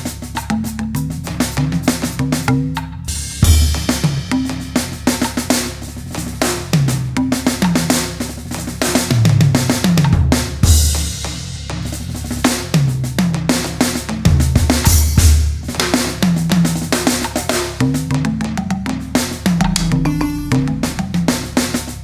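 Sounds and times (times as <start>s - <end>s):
jazz drum kit: 0.0s - 22.0s
groove loop: 3.4s - 9.9s, 14.0s - 22.0s.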